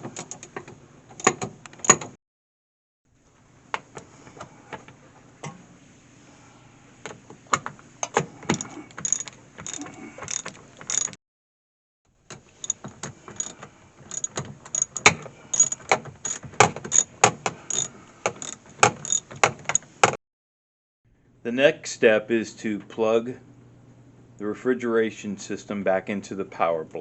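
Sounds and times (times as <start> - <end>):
ratchet wrench clicking: 8.5 - 11.2, 12.6 - 12.8, 13.4 - 17.1, 17.7 - 19.8.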